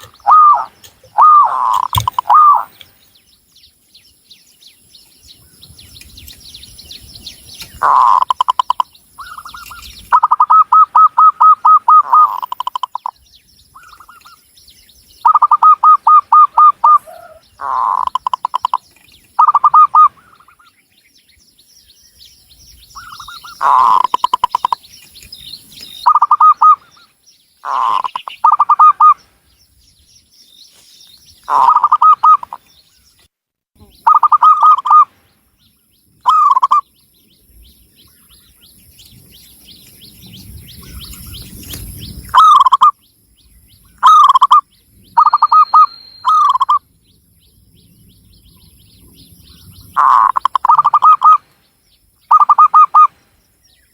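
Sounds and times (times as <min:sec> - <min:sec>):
dove cooing: 0:00.0 - 0:02.8, 0:07.8 - 0:13.1, 0:15.2 - 0:18.8, 0:19.4 - 0:20.6, 0:23.0 - 0:24.8, 0:26.1 - 0:26.9, 0:27.6 - 0:29.2, 0:31.5 - 0:32.6, 0:34.0 - 0:35.1, 0:50.0 - 0:51.4, 0:52.3 - 0:53.1
small birds chirping: 0:00.0 - 0:53.9.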